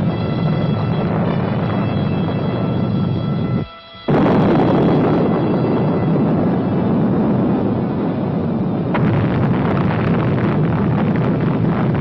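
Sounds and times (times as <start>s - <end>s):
rocket engine roaring: 0.0s - 12.0s.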